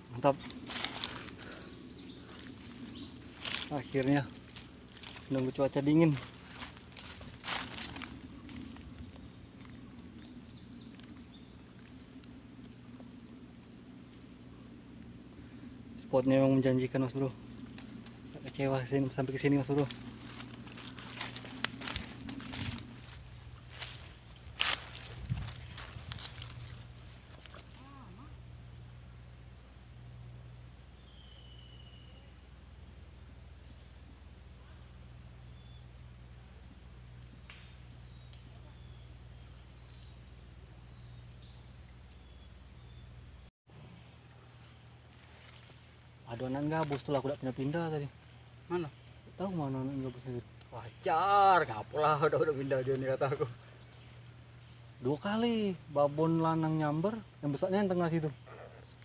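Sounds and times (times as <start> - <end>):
insects chirring: 0.0 - 59.0
faint short whistle: 31.1 - 32.2.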